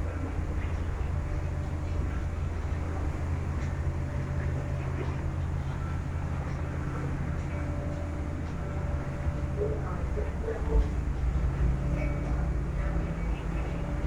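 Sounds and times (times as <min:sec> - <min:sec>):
ferry engine low drone: 0:00.0 - 0:14.0.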